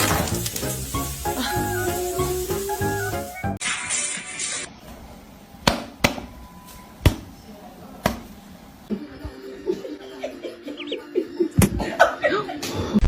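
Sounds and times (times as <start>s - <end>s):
laughter: 9.6s - 13.0s.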